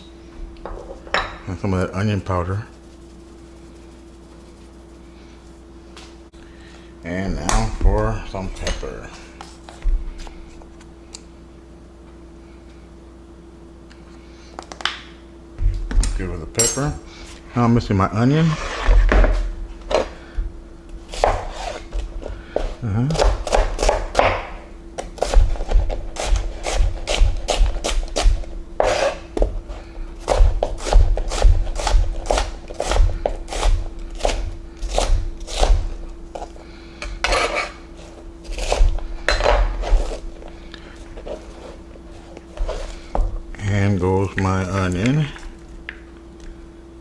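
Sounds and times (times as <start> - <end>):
steady hum: 0.0 - 47.0
knife chopping on cutting board: 21.1 - 21.9, 23.0 - 29.5, 30.2 - 40.3.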